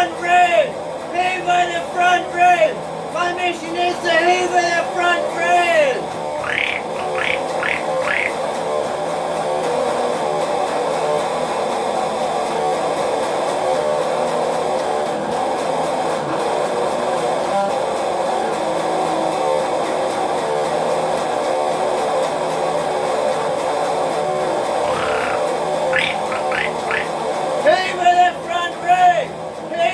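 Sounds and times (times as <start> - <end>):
droning guitar music: 6.4 - 8.6.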